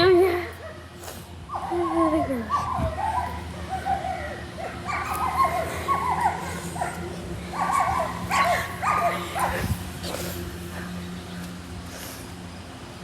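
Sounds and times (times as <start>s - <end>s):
steady low hum: 0.0s - 13.0s
dog whining and yipping: 1.5s - 9.7s.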